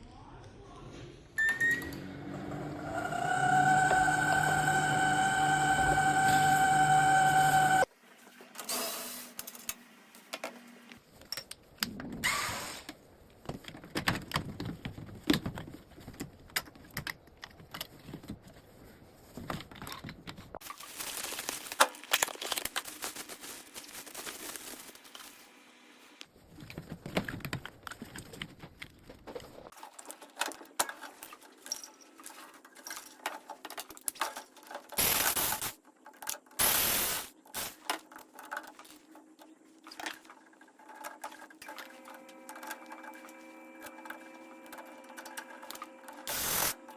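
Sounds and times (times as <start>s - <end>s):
small parts and tools rattling: 13.4s - 25.4s, 26.4s - 36.8s, 37.4s - 43.2s.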